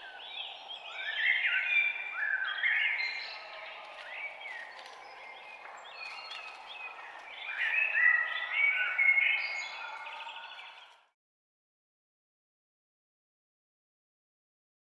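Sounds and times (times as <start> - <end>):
songbirds chirping and singing: 0.0 - 11.1.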